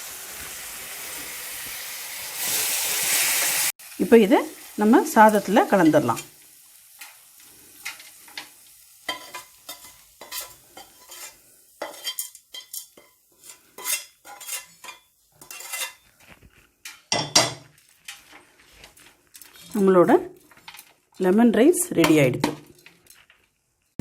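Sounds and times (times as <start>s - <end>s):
spoon scraping and clinking on pan: 7.8s - 16.2s, 16.8s - 21.4s.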